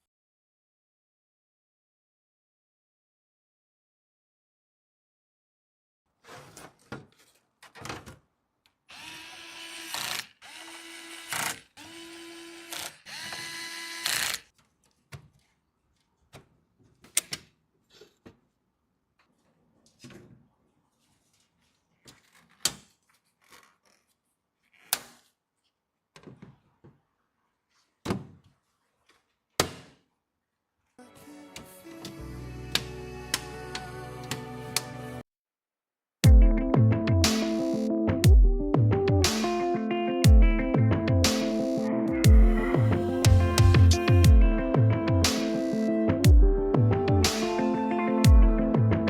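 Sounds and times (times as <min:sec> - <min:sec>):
electric screwdriver motor whine: 0:08.9 - 0:14.5.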